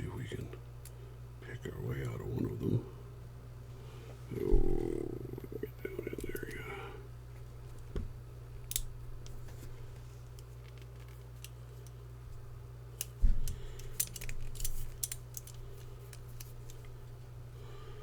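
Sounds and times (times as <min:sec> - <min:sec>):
steady low hum: 0:00.0 - 0:18.0
metallic clicks of lock picking: 0:08.7 - 0:08.9.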